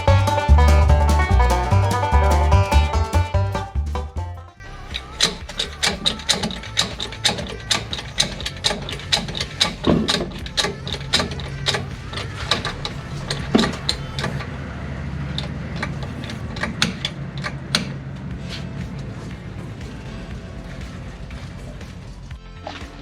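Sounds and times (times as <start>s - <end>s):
socket ratchet clicking: 5.0s - 14.4s.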